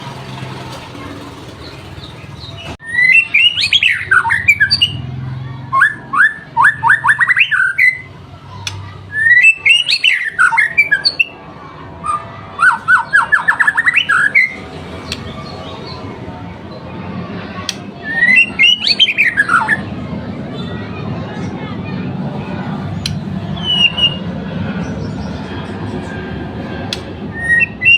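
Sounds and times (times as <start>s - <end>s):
bird singing whistled phrases: 2.8s - 5.0s, 5.7s - 8.1s, 9.1s - 11.3s, 18.0s - 19.8s, 23.6s - 24.3s, 27.3s - 27.9s.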